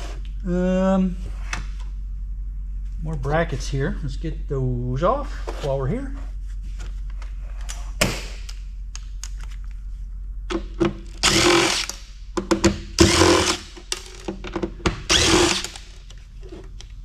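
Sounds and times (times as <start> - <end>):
power drill-driver running: 11.2 - 12.0, 13.0 - 14.2, 15.1 - 15.9.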